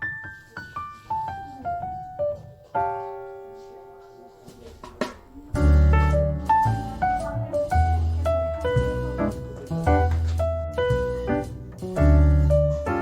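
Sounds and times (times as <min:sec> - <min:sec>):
piano notes: 0:00.0 - 0:13.0
low bass line: 0:05.6 - 0:13.0.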